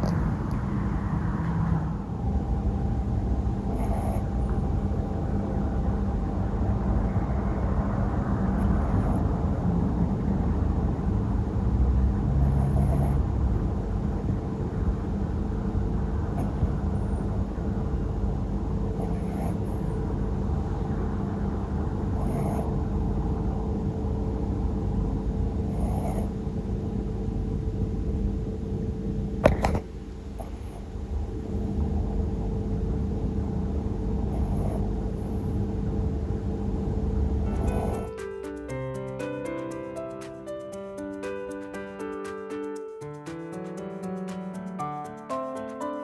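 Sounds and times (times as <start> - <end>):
steady hum: 0.0 - 42.7
puppy snoring: 3.3 - 4.8, 8.4 - 9.4, 12.2 - 13.5, 16.3 - 17.4, 18.8 - 20.2, 22.0 - 22.9, 25.6 - 26.4, 30.4 - 30.9, 34.2 - 35.7, 37.2 - 38.2.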